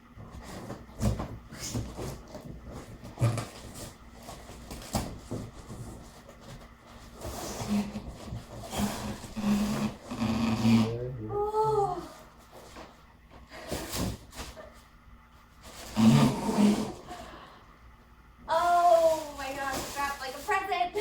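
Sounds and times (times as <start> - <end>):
paper and plastic rustling: 18.5 - 21.0.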